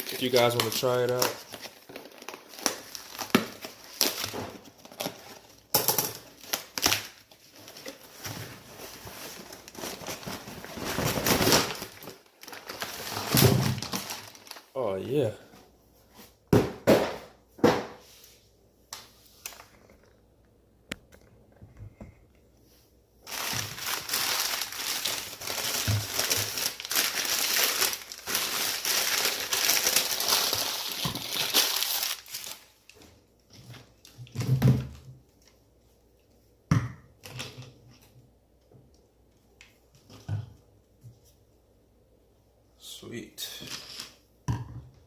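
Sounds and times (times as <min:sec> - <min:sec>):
packing material crinkling: 0:00.0 - 0:15.2, 0:23.2 - 0:33.0.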